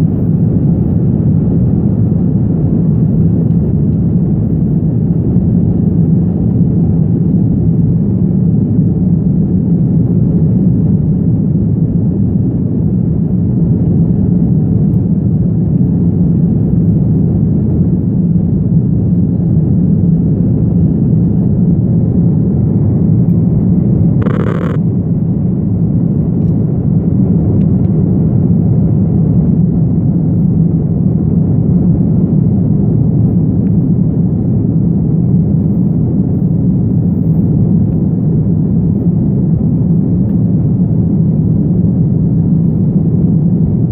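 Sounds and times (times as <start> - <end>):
jet engines rumbling in cabin: 0.0 - 43.9
short cabin tone: 24.2 - 24.8.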